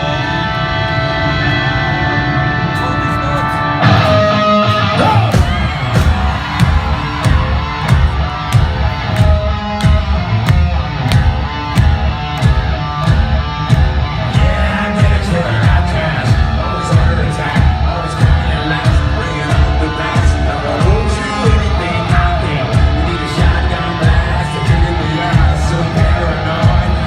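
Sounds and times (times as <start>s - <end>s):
distorted electric guitars: 0.0s - 27.0s
hard rock band playing: 0.0s - 27.0s
heavy drum hits: 5.4s - 21.0s.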